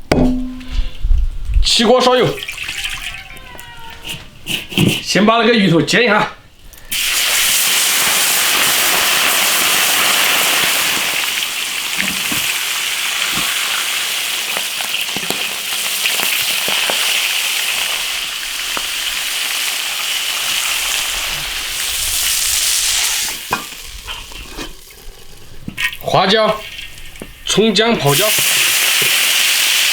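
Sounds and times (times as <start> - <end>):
oil crackling spatters: 6.8 - 29.9
fish frying in hot oil: 6.9 - 27.2, 28.1 - 29.9.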